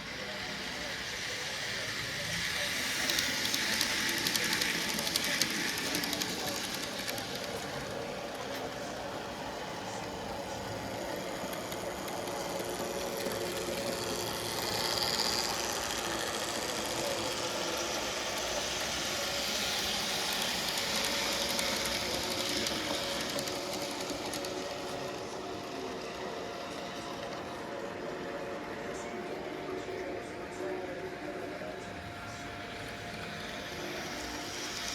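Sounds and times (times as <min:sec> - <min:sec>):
wheels rattling over track: 0:00.0 - 0:29.7
small electric motor whirring: 0:00.5 - 0:08.7.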